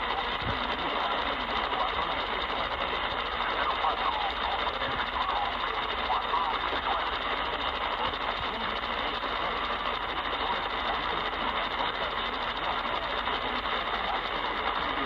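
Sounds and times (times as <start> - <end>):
faint voice on radio: 0.0 - 15.0
radio static hiss: 0.0 - 15.0.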